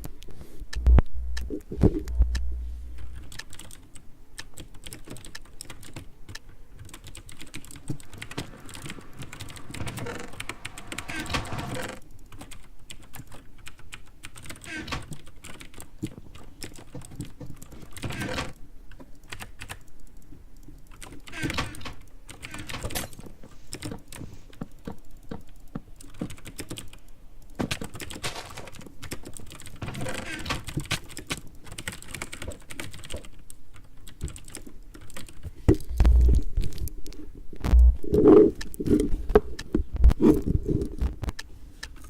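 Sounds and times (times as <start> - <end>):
loud low thumps: 0.8 - 3.0, 37.6 - 38.0.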